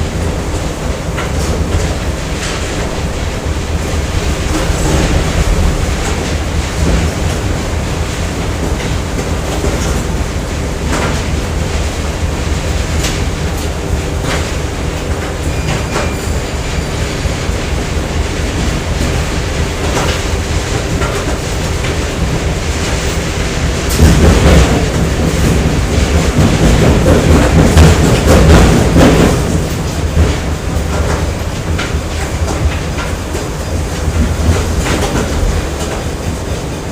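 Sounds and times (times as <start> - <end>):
machinery rumble: 0.0 - 36.9.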